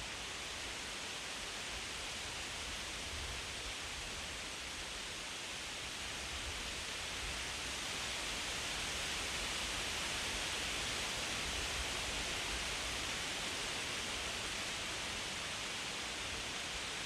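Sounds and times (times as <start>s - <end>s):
wind rustling leaves: 0.0s - 17.0s.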